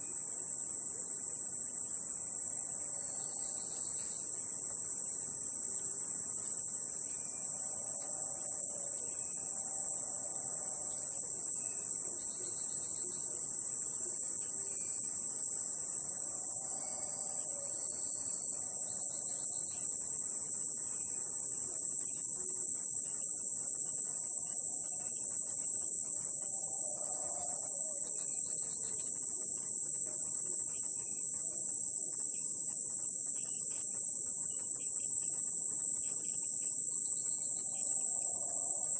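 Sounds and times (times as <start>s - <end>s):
insects droning: 0.0s - 38.9s.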